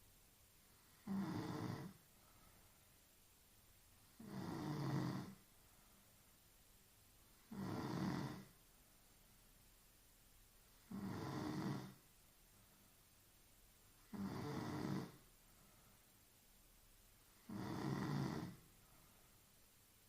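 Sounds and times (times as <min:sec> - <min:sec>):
quiet breathing: 0:00.0 - 0:09.8, 0:10.5 - 0:20.0
woman snoring: 0:00.9 - 0:02.0, 0:04.2 - 0:05.4, 0:07.4 - 0:08.5, 0:10.8 - 0:12.0, 0:14.0 - 0:15.2, 0:17.4 - 0:18.7.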